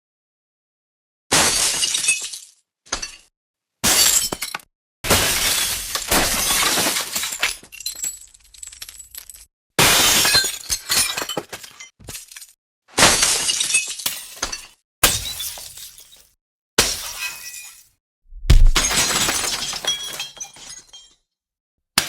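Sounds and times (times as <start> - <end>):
window glass shattering: 15.0 - 16.2, 18.8 - 21.1.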